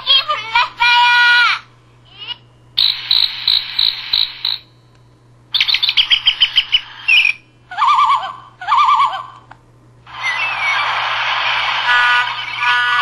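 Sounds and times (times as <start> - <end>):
bird-like chirps: 5.6 - 7.5.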